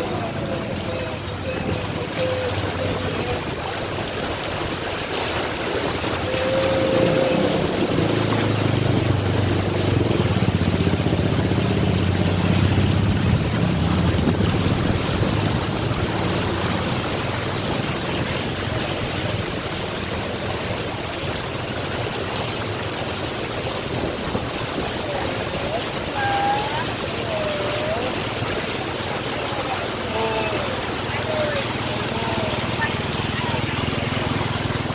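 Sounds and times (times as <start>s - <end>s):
rushing water: 0.0s - 34.9s
vehicle engine running: 6.5s - 24.2s, 30.7s - 34.9s.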